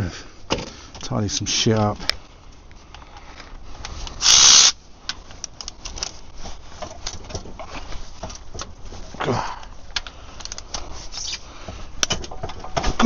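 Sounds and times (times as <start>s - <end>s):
short rushing hiss: 4.2s - 4.8s.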